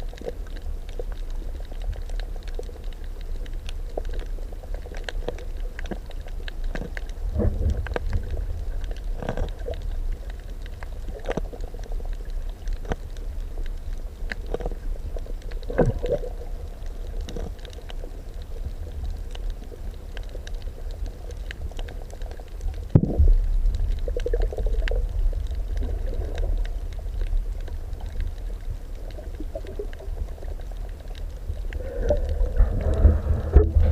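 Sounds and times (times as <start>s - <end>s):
underwater rumble of moving water: 0.0s - 33.9s
underwater clicks and pops: 15.5s - 16.3s, 22.8s - 27.4s.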